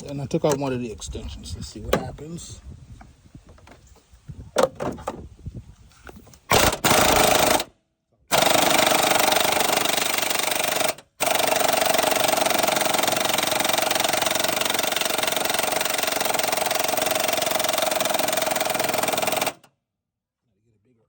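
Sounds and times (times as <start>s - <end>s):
air impact wrench hammering: 6.5s - 7.7s, 8.3s - 19.6s.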